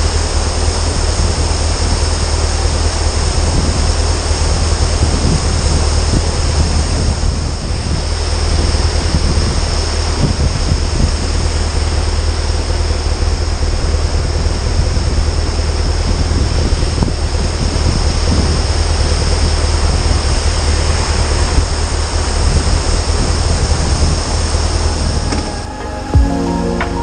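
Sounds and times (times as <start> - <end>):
wind rushing over microphone: 0.0 - 25.7
motorcycle engine drone: 0.0 - 27.0.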